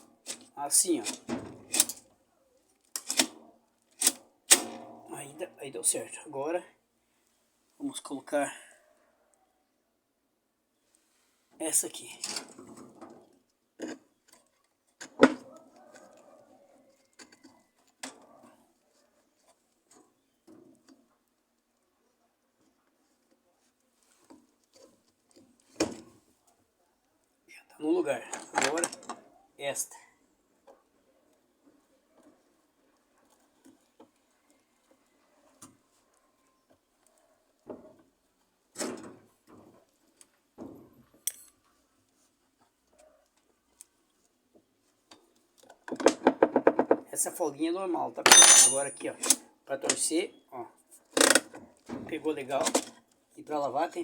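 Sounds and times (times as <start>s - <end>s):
clicks and knocks of parts handled: 0.2s - 2.0s, 2.8s - 4.9s, 28.3s - 29.2s, 48.3s - 49.4s.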